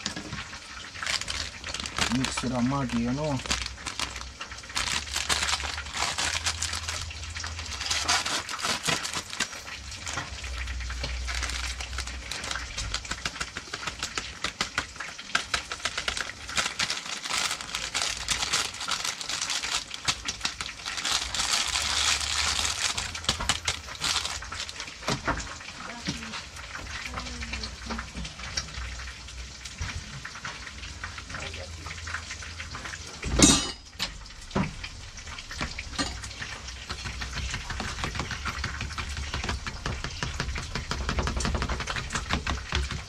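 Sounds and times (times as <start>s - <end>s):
chicken frying in hot oil: 0.0s - 43.0s.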